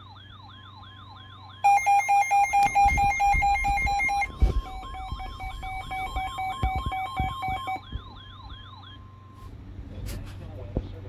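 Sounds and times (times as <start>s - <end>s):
fast loud beeping: 1.6s - 8.4s
steady electronic tone: 1.7s - 7.8s.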